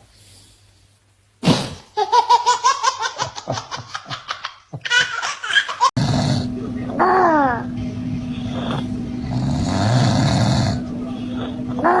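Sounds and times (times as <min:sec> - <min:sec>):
baby laughing: 0:01.8 - 0:06.0, 0:07.0 - 0:07.6.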